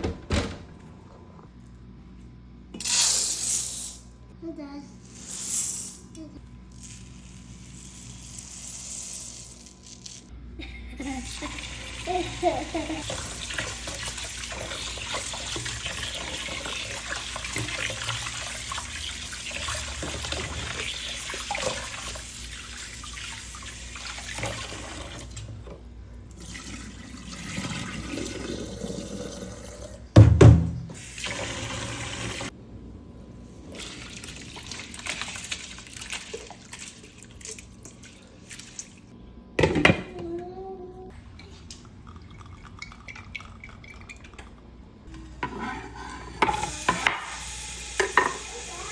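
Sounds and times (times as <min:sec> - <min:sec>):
tap water running into sink: 0:11.4 - 0:25.8
loud knocks: 0:30.2 - 0:30.9.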